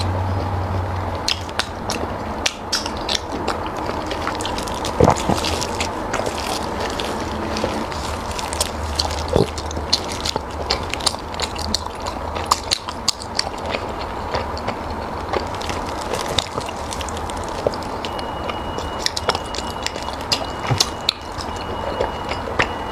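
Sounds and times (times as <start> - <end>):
low hum: 0.0 - 22.9
person chewing soft food: 0.0 - 22.9.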